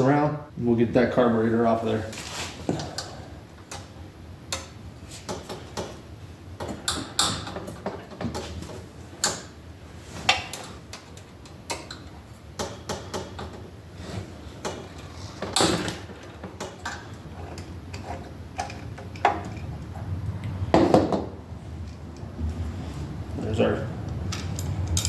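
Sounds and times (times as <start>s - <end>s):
low steady hum: 0.0s - 25.0s
tools and metal parts clinking: 24.3s - 25.0s.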